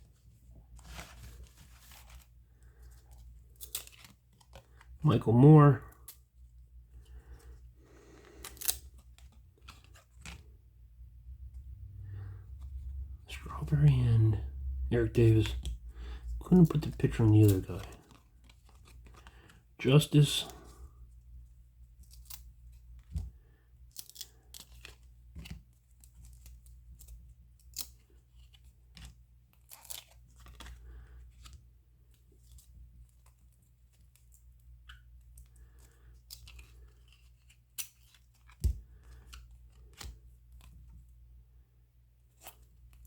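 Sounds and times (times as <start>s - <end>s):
faint low hum: 0.0s - 29.6s
cards flicking and rustling: 0.2s - 5.0s, 7.0s - 10.6s, 16.5s - 20.7s, 21.9s - 41.1s.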